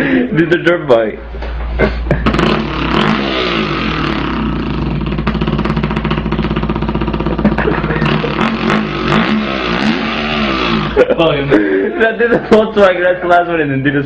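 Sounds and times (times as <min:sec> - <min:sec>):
man imitating motorbike engine: 0:01.8 - 0:11.6.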